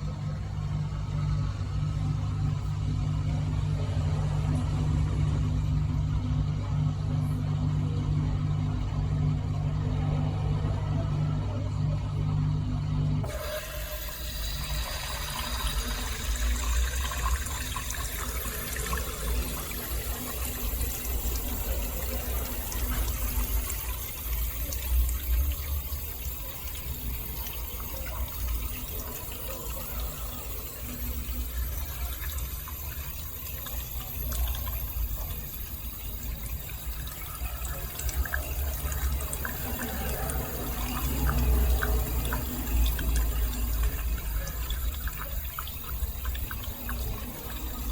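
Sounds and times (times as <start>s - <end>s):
low wavering pump hum: 0.0s - 47.9s
water splashing in dishwasher: 13.2s - 47.9s.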